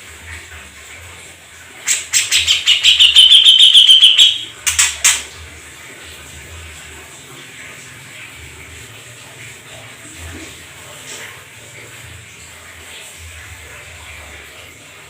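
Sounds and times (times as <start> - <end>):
songbird trilling: 2.2 - 4.5.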